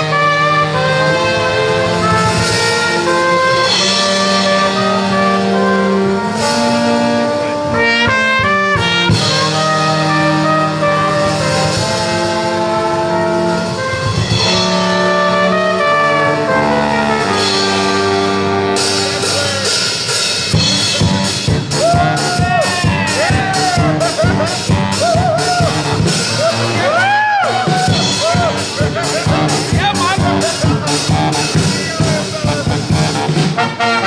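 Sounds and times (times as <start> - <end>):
brass band playing: 0.0 - 34.0.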